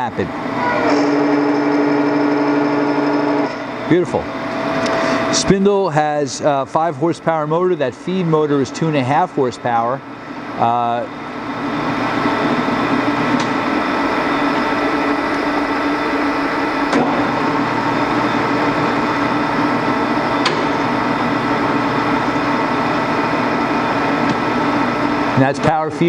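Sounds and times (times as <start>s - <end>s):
milling machine humming: 0.0s - 26.0s.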